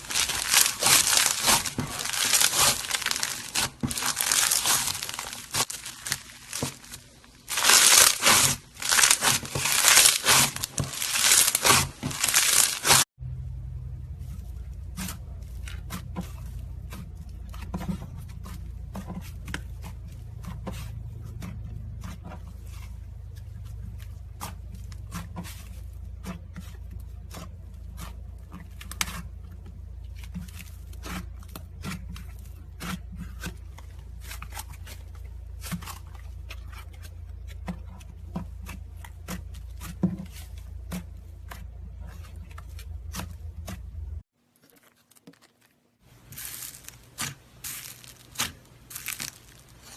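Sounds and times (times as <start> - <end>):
low hum: 13.2 - 17.6.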